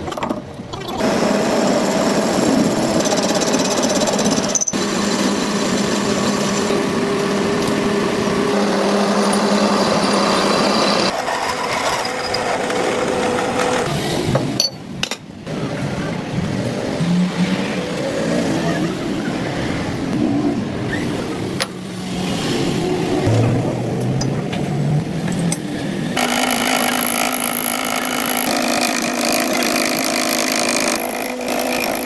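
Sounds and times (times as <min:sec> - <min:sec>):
power tools working on steel: 0:01.0 - 0:14.8, 0:25.3 - 0:32.0.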